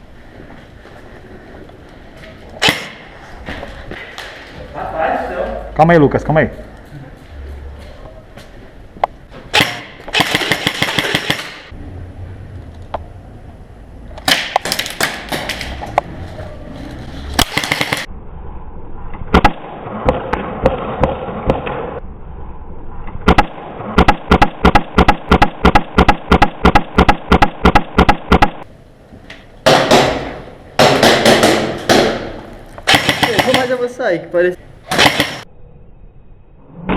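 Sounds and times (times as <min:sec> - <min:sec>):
airsoft rifle firing: 0:02.6 - 0:03.0, 0:09.5 - 0:11.7, 0:14.2 - 0:15.7, 0:17.4 - 0:18.1, 0:23.3 - 0:28.6, 0:29.6 - 0:33.9, 0:34.9 - 0:35.4.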